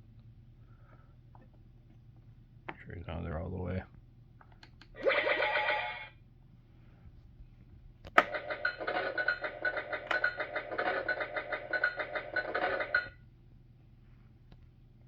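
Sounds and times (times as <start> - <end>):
toy electronic sound effect: 5.0 - 6.2, 8.3 - 13.1.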